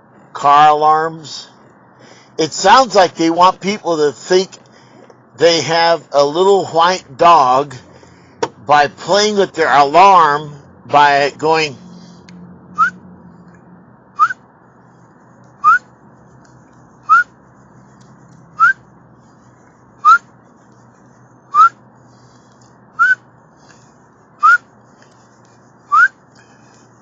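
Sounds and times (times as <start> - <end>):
man whistling short rising chirps: 15.6 - 15.8, 21.5 - 21.7, 23.0 - 23.2, 24.4 - 24.6, 25.9 - 26.2.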